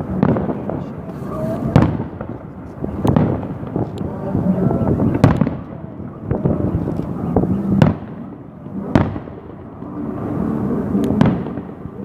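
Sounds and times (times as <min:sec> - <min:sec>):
small firework cracks: 0:00.0 - 0:04.4, 0:05.1 - 0:07.2, 0:08.9 - 0:09.9, 0:11.0 - 0:11.8
fireworks bursting with bangs: 0:00.0 - 0:12.0
rumbling echo: 0:00.0 - 0:12.0.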